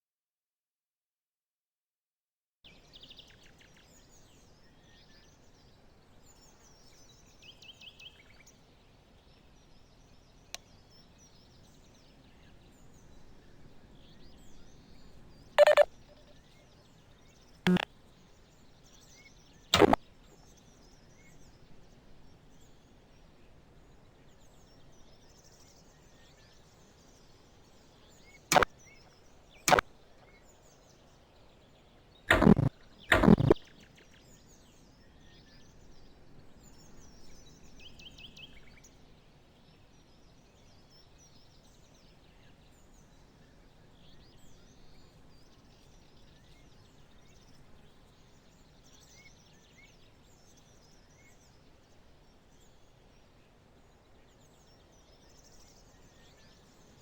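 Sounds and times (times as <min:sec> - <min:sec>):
high bird-like chirps: 0:15.6 - 0:16.3, 0:19.8 - 0:20.0, 0:32.3 - 0:33.6.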